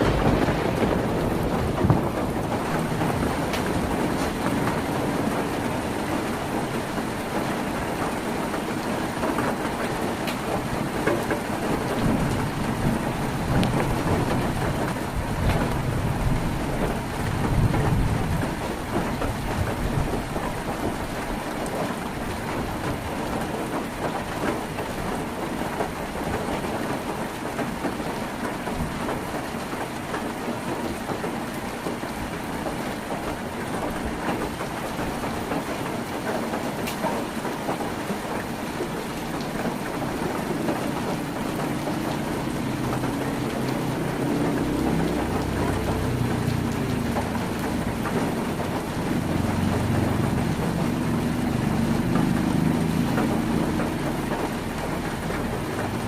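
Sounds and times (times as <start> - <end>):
rumbles of thunder: 0.0 - 7.4, 10.5 - 21.0
heavy rain on a tin roof: 0.0 - 56.0.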